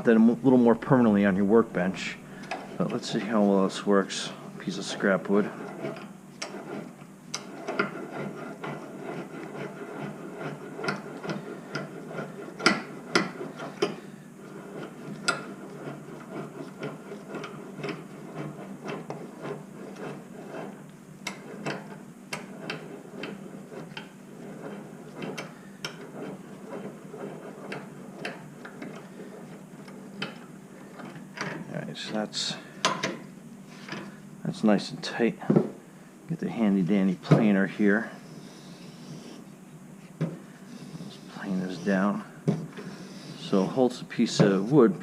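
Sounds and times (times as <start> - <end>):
vise handle clicking and knocking: 32.8 - 33.2.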